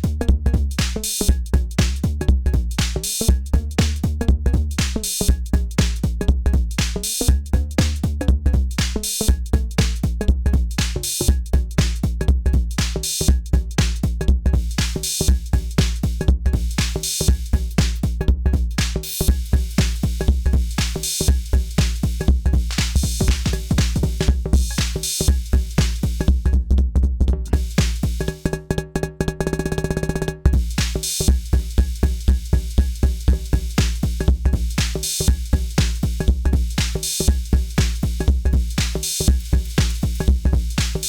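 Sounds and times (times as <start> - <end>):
drum machine beat: 0.0 - 41.0
rapid pitched drum roll: 14.8 - 26.5, 27.5 - 28.6, 29.5 - 41.0.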